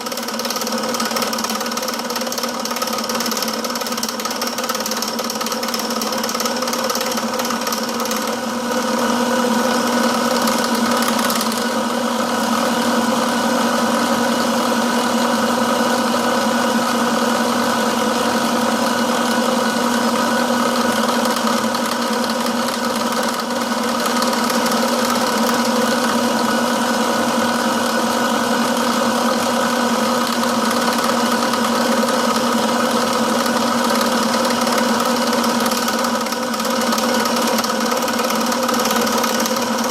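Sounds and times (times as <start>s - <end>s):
milling machine cutting: 0.0s - 39.9s.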